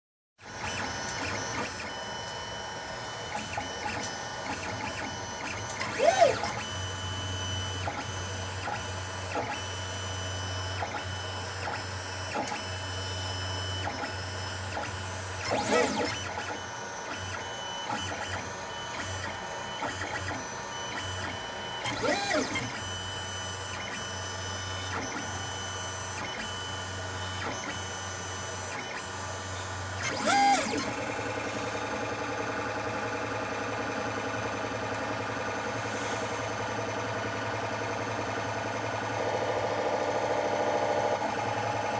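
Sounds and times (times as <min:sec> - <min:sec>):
stepper motors whining: 0:00.6 - 0:11.4, 0:12.2 - 0:31.6.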